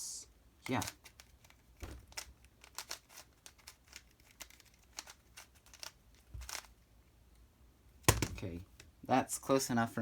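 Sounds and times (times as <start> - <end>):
plastic puzzle clicking: 0.6 - 6.7.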